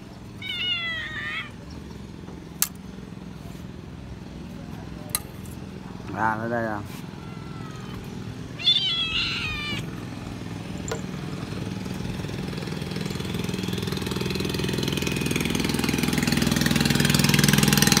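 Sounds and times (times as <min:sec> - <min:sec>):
motor engine running: 0:00.0 - 0:18.0
cat meowing: 0:00.3 - 0:01.6, 0:06.9 - 0:10.0.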